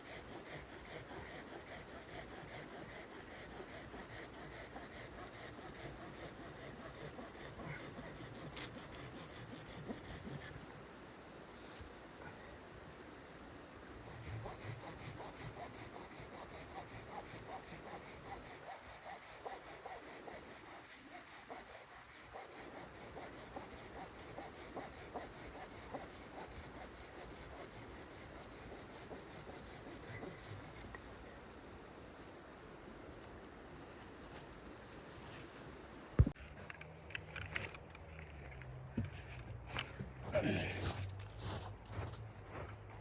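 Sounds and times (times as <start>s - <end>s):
hand saw cutting wood: 0.0s - 10.6s, 14.0s - 30.9s.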